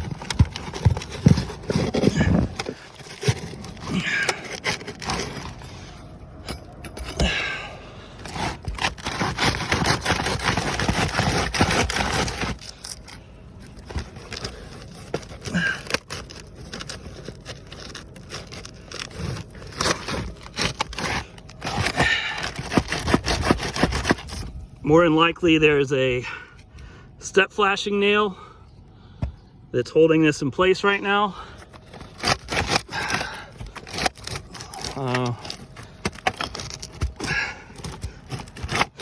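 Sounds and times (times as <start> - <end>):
shingle scraping on roof: 0.0 - 24.6, 31.4 - 39.0.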